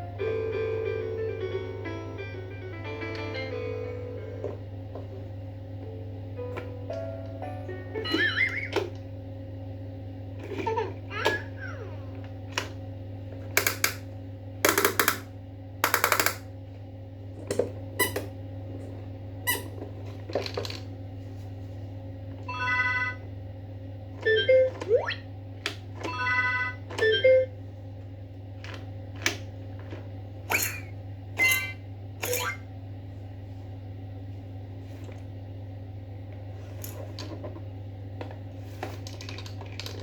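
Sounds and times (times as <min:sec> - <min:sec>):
steady low hum: 0:00.0 - 0:40.0
toy clicks and squeaks: 0:30.5 - 0:32.6.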